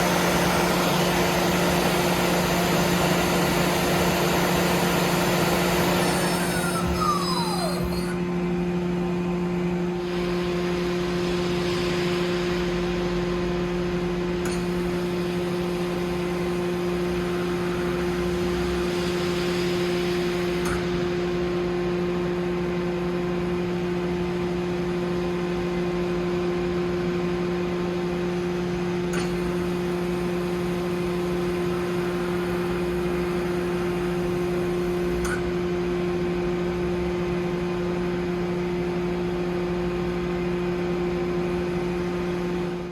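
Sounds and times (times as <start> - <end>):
lathe machine hum: 0.0 - 8.2.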